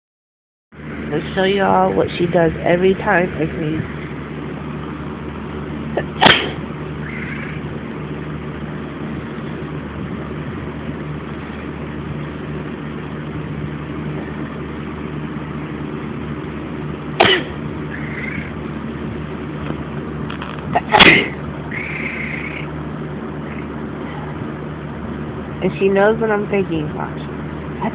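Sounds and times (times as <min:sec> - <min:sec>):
steady low hum: 0:00.8 - 0:27.9
person sneezing: 0:06.0 - 0:06.6, 0:17.2 - 0:17.6, 0:20.8 - 0:21.4
cat meowing: 0:21.7 - 0:22.6.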